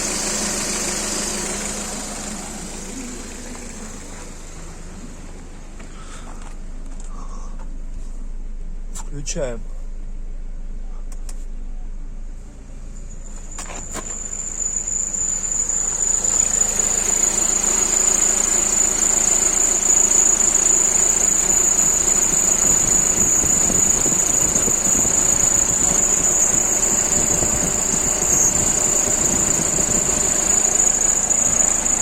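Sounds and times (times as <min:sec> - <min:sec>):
car engine running: 0:00.0 - 0:32.0
high-pitched compressor whistle: 0:13.0 - 0:32.0.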